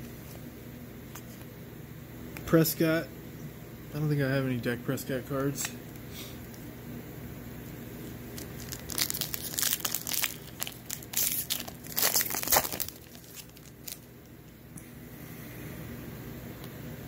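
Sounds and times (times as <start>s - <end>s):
plastic wrapper crinkling and tearing: 8.3s - 14.4s.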